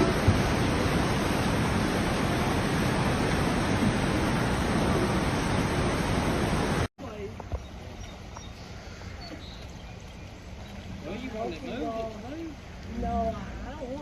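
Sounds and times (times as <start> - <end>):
flood water rushing: 0.0 - 6.9.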